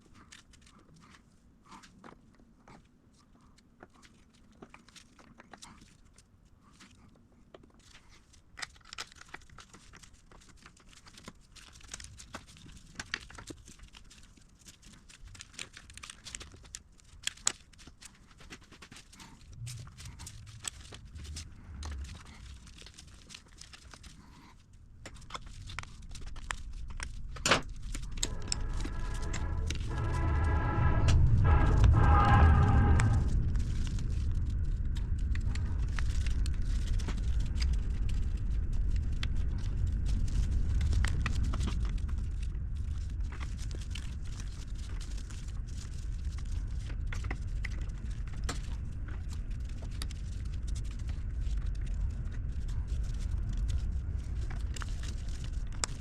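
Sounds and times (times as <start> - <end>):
rustling: 7.7 - 56.0
low rumble: 19.2 - 56.0.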